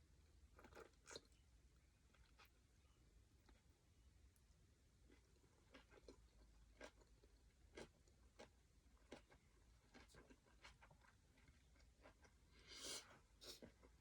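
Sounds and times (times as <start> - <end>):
person chewing food: 0.6 - 1.4, 2.1 - 2.6, 4.4 - 14.0.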